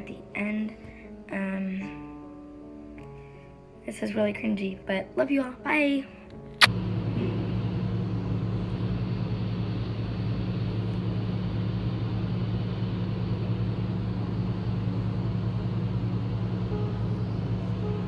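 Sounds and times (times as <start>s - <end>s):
vehicle engine running: 6.7s - 18.0s.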